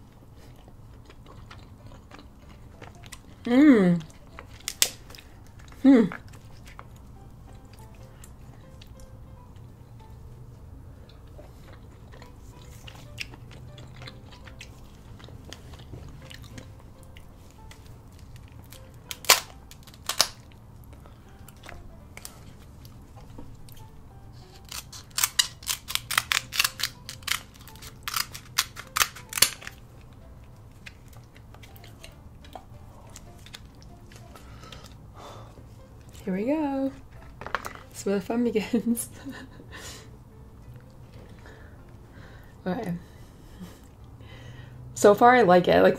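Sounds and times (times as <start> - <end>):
crab shells cracking: 4.0 - 5.6, 18.2 - 22.3, 24.5 - 29.8.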